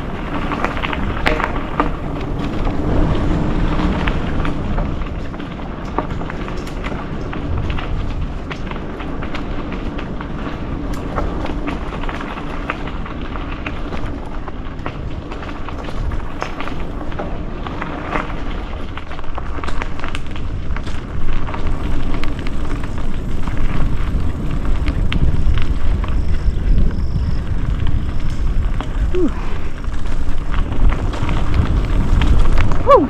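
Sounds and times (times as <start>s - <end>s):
bike clicks and rattles: 0.0s - 33.0s
wind buffeting microphone: 0.0s - 33.0s.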